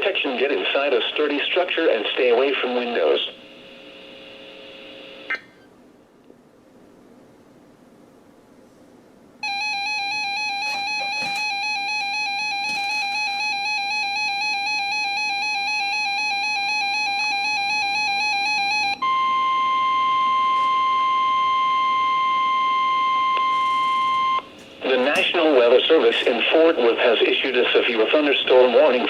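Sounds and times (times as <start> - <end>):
steady single-pitch tone: 9.4 - 24.5
warbling electronic alarm tone: 9.4 - 24.5.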